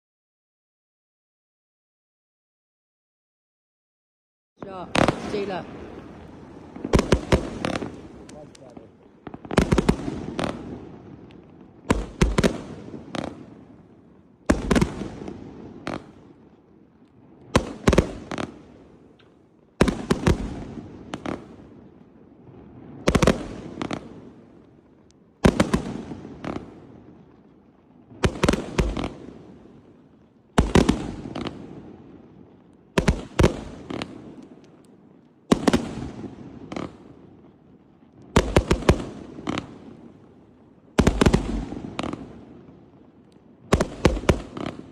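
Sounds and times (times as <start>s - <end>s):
firework cake bangs: 11.8s - 13.5s.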